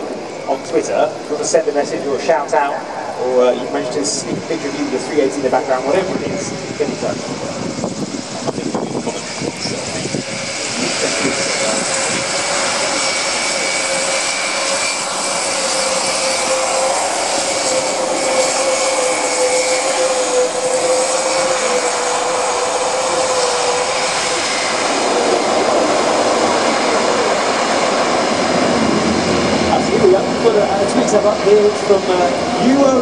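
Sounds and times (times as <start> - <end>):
turboprop engines whining: 0.0 - 33.0.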